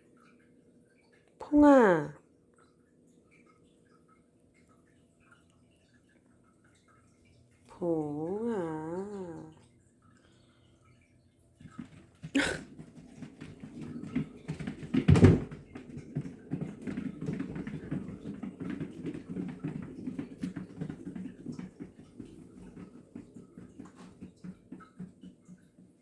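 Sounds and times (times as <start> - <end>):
exercise wheel rumbling and clattering: 11.6 - 26.0.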